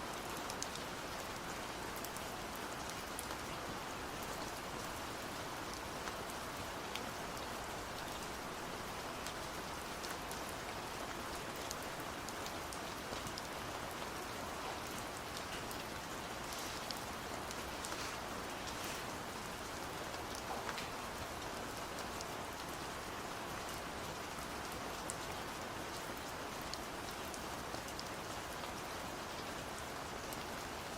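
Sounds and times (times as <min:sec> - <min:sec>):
steady rain: 0:00.0 - 0:30.9
raindrops ticking: 0:05.7 - 0:22.7.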